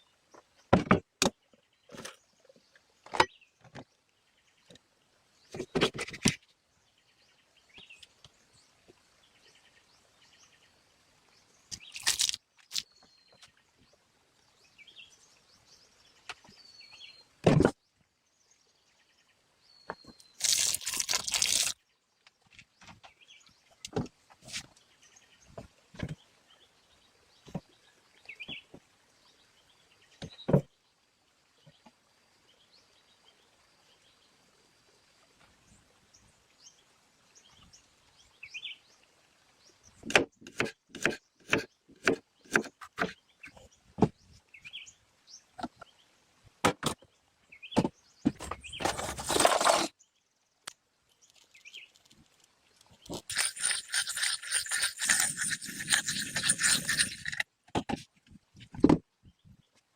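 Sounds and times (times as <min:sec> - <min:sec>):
dense scraping noise: 0:48.4 - 0:49.9, 0:53.0 - 0:57.5.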